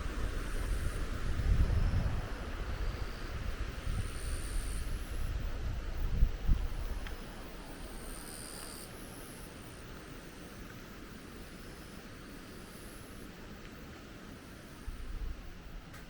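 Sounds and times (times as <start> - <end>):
wind gust on microphone: 0.0 - 8.1.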